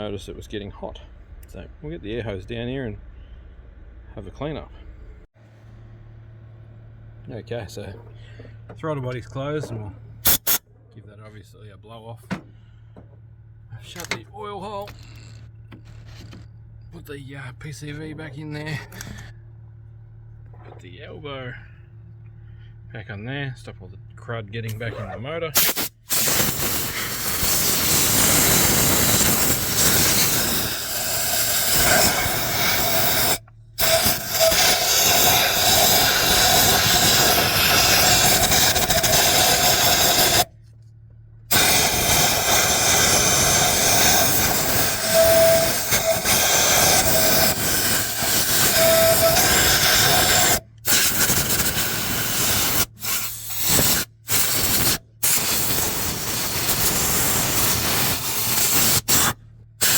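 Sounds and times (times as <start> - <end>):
compressed air blow gun blasting: 10.2 - 10.6, 25.6 - 40.5, 41.5 - 59.9.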